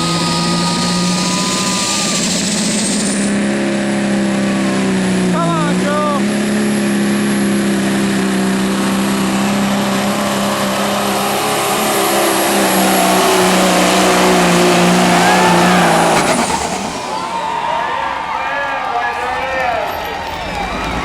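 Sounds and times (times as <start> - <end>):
diesel truck engine drone: 0.0 - 21.0.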